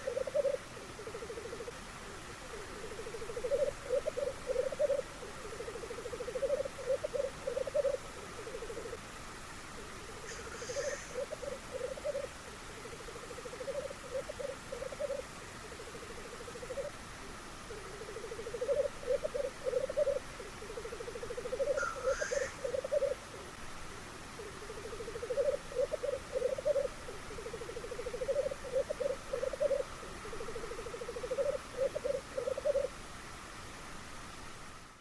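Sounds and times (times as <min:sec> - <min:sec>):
grouse bubbling song: 0:00.0 - 0:09.0, 0:09.8 - 0:17.0, 0:17.6 - 0:23.6, 0:24.3 - 0:32.9.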